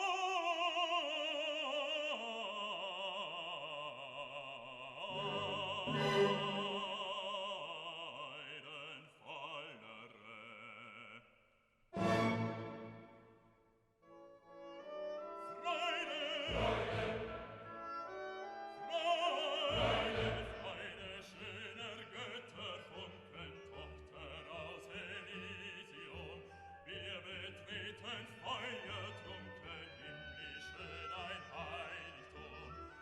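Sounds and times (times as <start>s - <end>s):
operatic singing voice: 0.0s - 11.4s, 15.3s - 33.0s
orchestral accompaniment: 5.1s - 7.0s, 12.0s - 13.3s, 14.6s - 21.2s.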